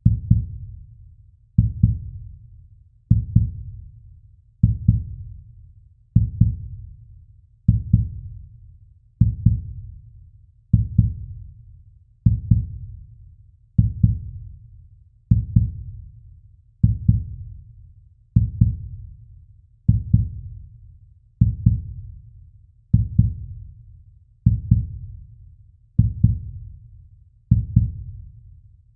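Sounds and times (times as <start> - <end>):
slow heartbeat thuds: 0.0 - 0.7, 1.6 - 2.2, 3.1 - 3.8, 4.6 - 5.2, 6.2 - 6.8, 7.7 - 8.3, 9.2 - 9.9, 10.7 - 11.4, 12.2 - 12.9, 13.8 - 14.5, 15.3 - 16.0, 16.8 - 17.5, 18.4 - 19.0, 19.9 - 20.6, 21.4 - 22.1, 22.9 - 23.6, 24.4 - 25.1, 26.0 - 26.7, 27.5 - 28.1.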